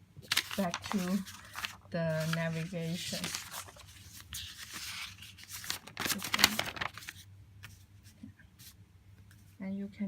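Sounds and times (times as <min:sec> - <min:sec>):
paper rustling and sliding: 0:00.2 - 0:08.8.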